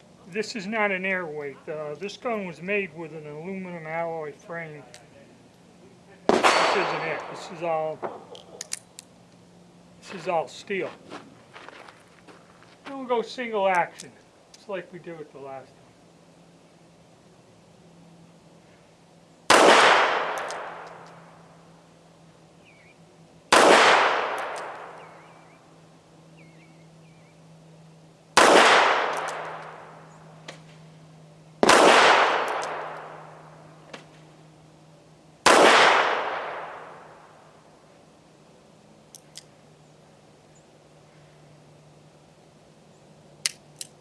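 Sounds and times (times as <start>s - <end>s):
revolver shots: 6.3s - 8.3s
revolver clicks: 32.3s - 33.1s, 39.1s - 39.6s.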